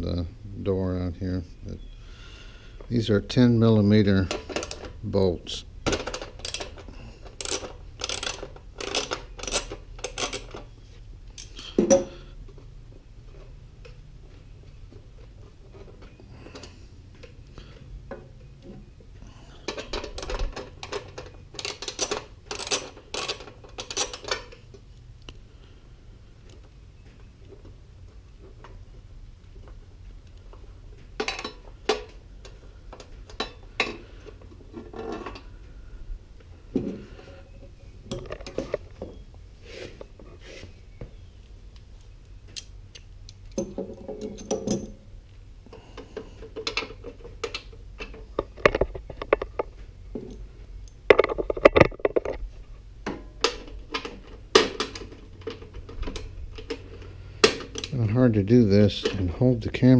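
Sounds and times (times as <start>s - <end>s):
metallic tool clinks and rattles: 11.4s - 12.0s.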